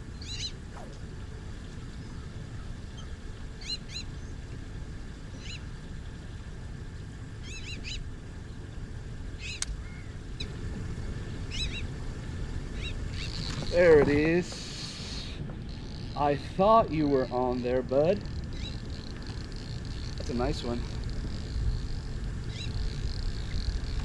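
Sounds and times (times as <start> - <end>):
steady low rumble: 0.0 - 24.0
short arched bird calls: 2.2 - 4.2, 7.4 - 8.0, 9.4 - 10.1, 11.5 - 11.9, 12.7 - 13.8.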